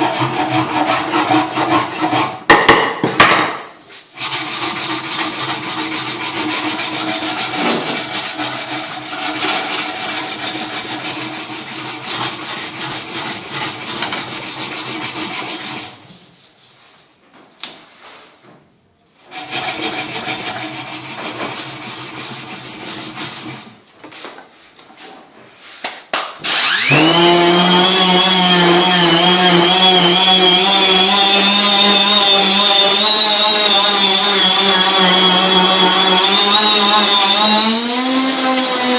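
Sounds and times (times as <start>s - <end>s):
wood rasping: 0.0s - 2.6s, 4.1s - 16.0s, 19.3s - 23.8s
power tool motor whine: 26.4s - 38.9s.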